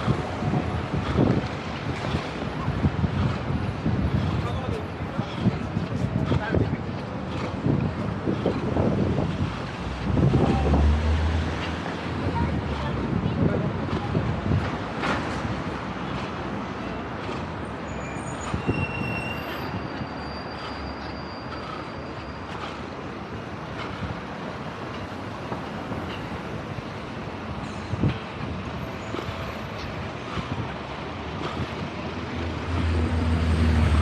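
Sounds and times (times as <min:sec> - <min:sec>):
heavy vehicle engine rumbling: 0:00.0 - 0:34.0
passing vehicles: 0:00.0 - 0:34.0.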